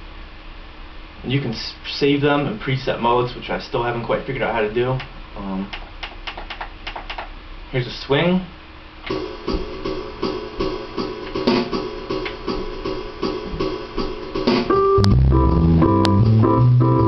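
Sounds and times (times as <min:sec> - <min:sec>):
bass notes and piano chords: 0:09.1 - 0:17.0
swing drum beat: 0:09.1 - 0:17.0.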